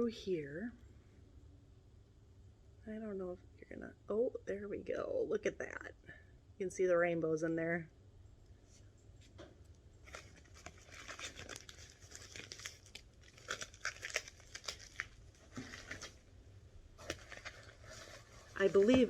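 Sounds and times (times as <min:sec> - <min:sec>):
packing paper crinkling and tearing: 0:10.0 - 0:16.2, 0:17.0 - 0:19.0.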